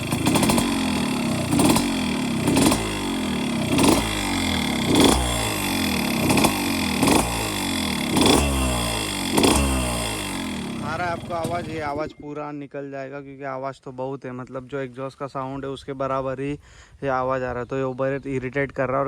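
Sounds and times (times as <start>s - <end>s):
piston noise: 0.0s - 12.0s
two-stroke engine revving: 0.0s - 12.2s.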